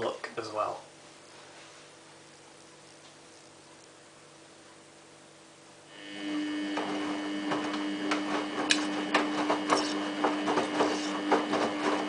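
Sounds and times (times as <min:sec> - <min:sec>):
washing machine motor hum: 0:03.2 - 0:12.0.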